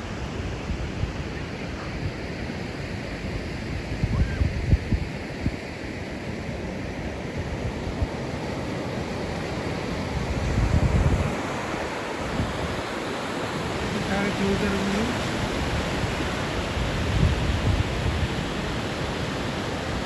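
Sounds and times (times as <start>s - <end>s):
wind buffeting microphone: 0.0s - 20.0s
ocean surf breaking: 5.6s - 20.0s.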